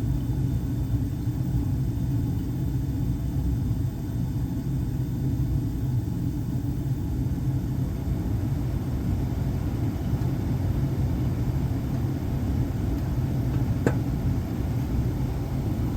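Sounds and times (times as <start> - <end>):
hvac equipment rumbling: 6.4 - 15.9.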